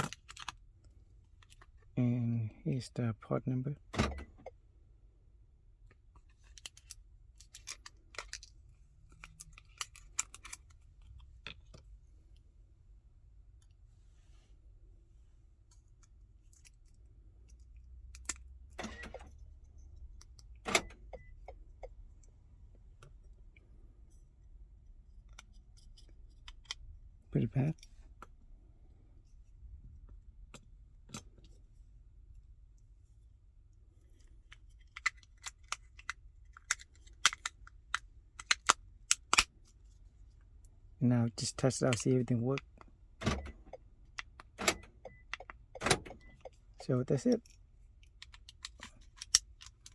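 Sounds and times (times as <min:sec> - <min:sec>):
key fob clicks and rattles: 0:06.5 - 0:11.8, 0:41.6 - 0:49.9.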